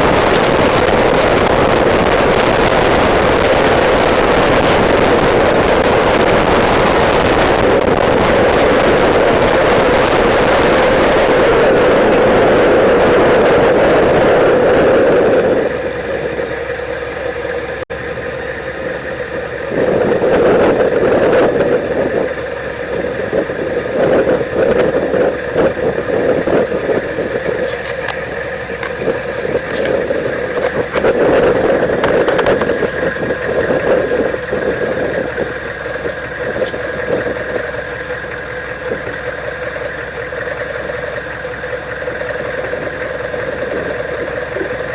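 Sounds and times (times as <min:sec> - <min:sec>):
loud rushing noise: 0:00.0 - 0:16.4
diesel truck engine revving: 0:00.0 - 0:44.9.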